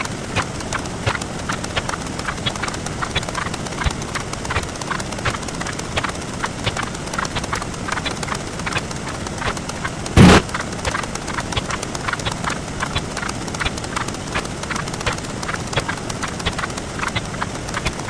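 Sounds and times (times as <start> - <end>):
fast stream of short clicks: 0.0 - 18.0
loud burst of noise: 10.2 - 10.8.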